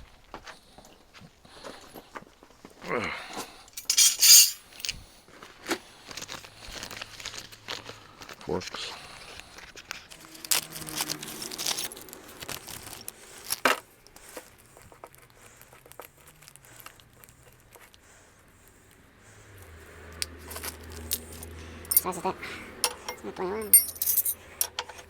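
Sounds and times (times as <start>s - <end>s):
hand tools rustling and clinking: 3.7s - 5.0s, 9.8s - 13.8s, 20.2s - 25.0s.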